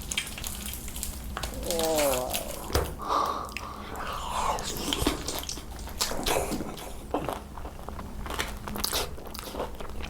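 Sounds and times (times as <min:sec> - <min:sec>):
wet chewing and biting: 0:04.5 - 0:10.0.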